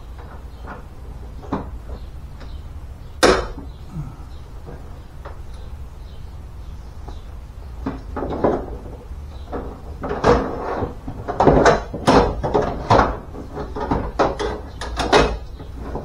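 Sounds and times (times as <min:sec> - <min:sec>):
metal clanks and knocks: 0:07.8 - 0:16.0.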